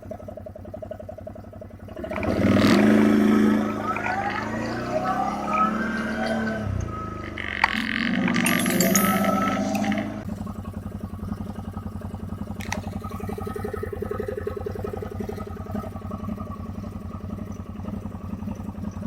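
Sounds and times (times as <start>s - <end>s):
quad bike engine idling: 0.0s - 5.1s, 6.6s - 19.0s.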